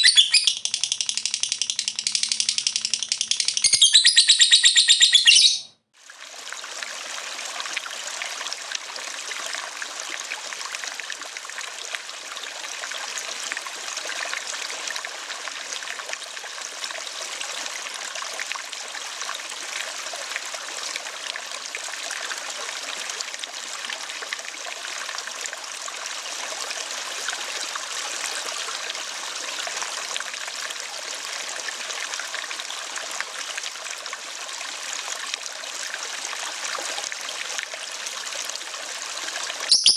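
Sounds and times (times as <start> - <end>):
water trickling: 0.0 - 5.1
lovebird trill: 0.0 - 5.7.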